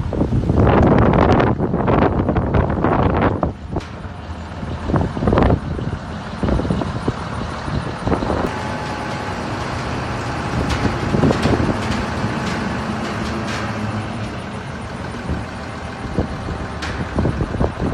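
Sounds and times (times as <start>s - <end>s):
thin steady whine: 0.0s - 17.9s
concrete mixer engine running: 1.5s - 17.9s
machine knocks and clanks: 3.2s - 17.9s.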